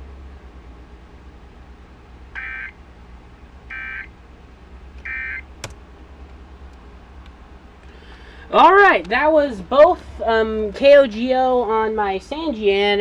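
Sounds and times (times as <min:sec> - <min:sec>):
low radio hum: 0:00.7 - 0:11.0
sharp click: 0:05.0 - 0:05.8.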